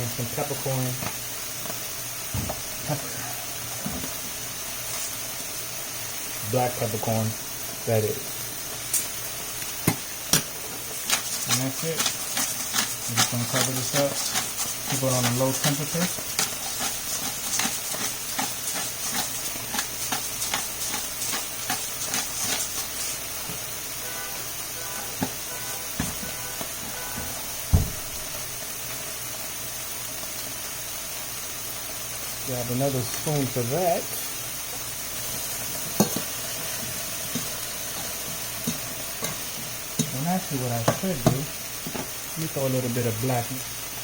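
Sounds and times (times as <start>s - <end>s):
food sizzling in a pan: 0.0s - 44.0s
spoon knocking and scraping pan: 9.8s - 23.6s, 25.2s - 25.4s, 26.0s - 27.9s, 35.8s - 40.2s, 40.8s - 42.1s.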